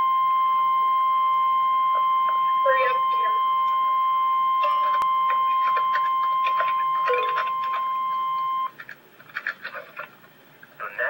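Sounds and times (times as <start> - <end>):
steady high alert tone: 4.6 - 8.7.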